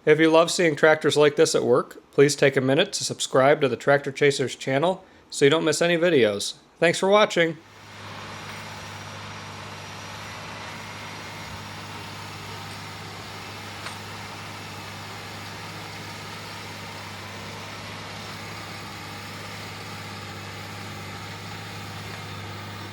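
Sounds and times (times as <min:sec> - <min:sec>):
tractor diesel engine droning: 0:07.6 - 0:22.9.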